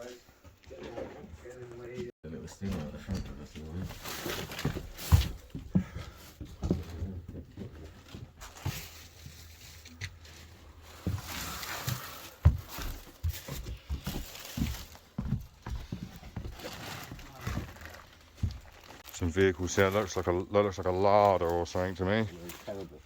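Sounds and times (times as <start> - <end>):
footsteps on debris: 2.6 - 19.1.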